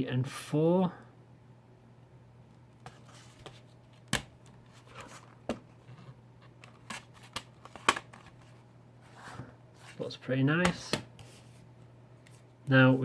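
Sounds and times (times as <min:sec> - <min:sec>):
light packaging rustling: 0:02.8 - 0:10.1.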